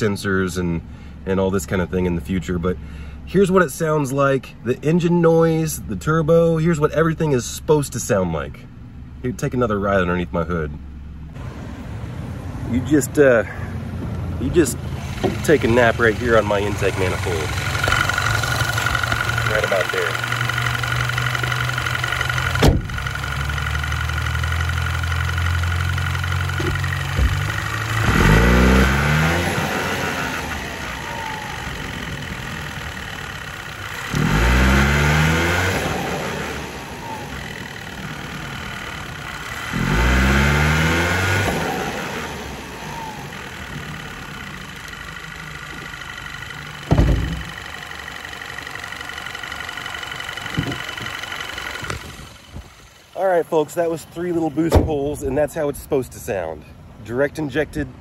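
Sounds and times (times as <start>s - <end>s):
car engine revving: 11.2s - 55.4s
sharp knocks: 46.9s - 47.6s.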